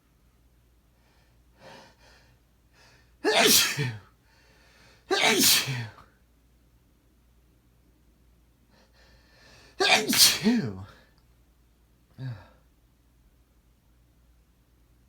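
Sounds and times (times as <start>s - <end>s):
man sneezing: 3.2s - 4.0s, 5.1s - 6.0s, 9.8s - 10.9s.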